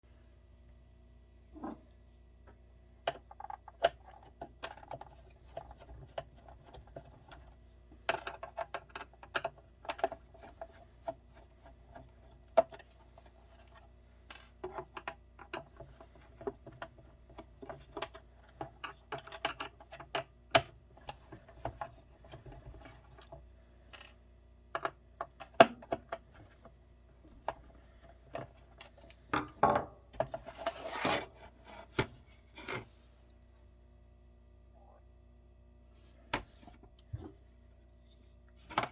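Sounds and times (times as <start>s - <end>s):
faint steady hum: 0.0s - 38.9s
rubbing and scraping: 30.3s - 32.9s.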